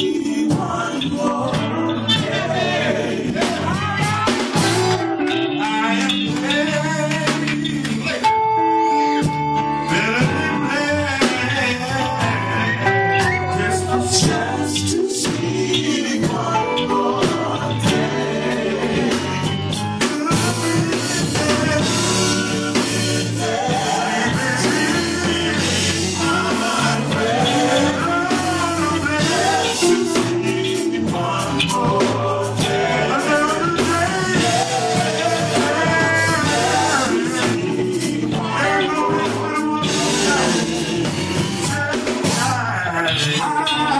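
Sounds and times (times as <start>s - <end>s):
drum kit: 0.0s - 8.4s, 9.0s - 43.9s
guitar: 0.0s - 43.9s
person singing lead vocal: 0.0s - 43.9s.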